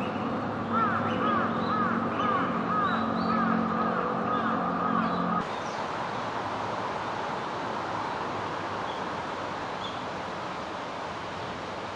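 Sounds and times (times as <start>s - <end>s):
steady outdoor rushing noise: 0.0s - 11.9s.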